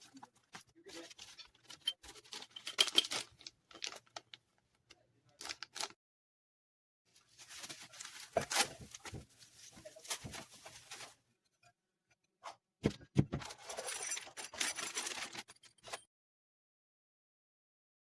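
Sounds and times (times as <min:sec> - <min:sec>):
plastic parts clicking and knocking: 0:00.3 - 0:06.0, 0:12.5 - 0:16.0.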